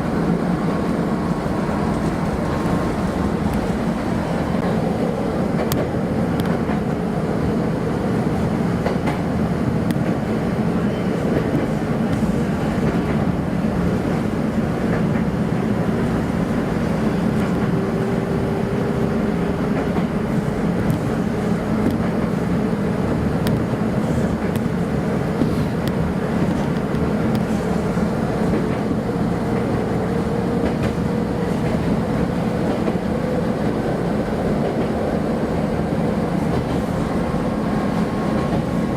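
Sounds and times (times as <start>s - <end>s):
train rumble: 0.0s - 38.9s.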